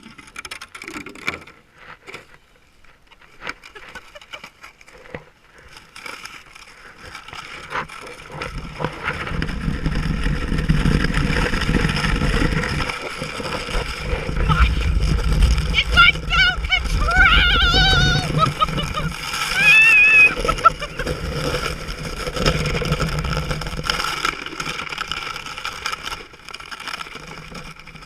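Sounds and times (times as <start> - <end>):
sled scraping and knocking on ice: 0.0 - 28.0
sled rushing down snow slope: 3.3 - 28.0
wind buffeting microphone: 13.8 - 21.7.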